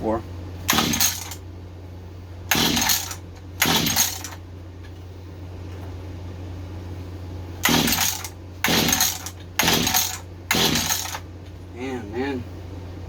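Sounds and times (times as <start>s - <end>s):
steady low hum: 0.0s - 13.0s
recoil starter pull whir: 0.7s - 1.4s, 2.5s - 4.4s, 7.6s - 11.3s.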